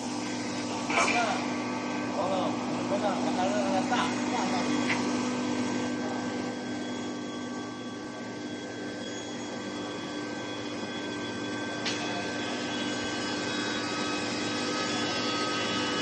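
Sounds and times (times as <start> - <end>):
machine drone with humming tones: 0.0 - 16.0.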